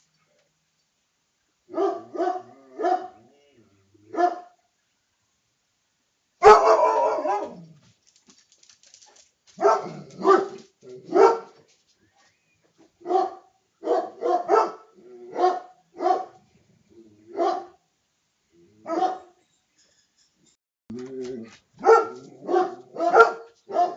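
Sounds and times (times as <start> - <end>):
dog barking: 1.7 - 3.2, 4.1 - 4.6, 6.4 - 7.6, 9.6 - 11.6, 13.0 - 16.4, 17.3 - 17.8, 18.8 - 19.4, 21.8 - 23.9.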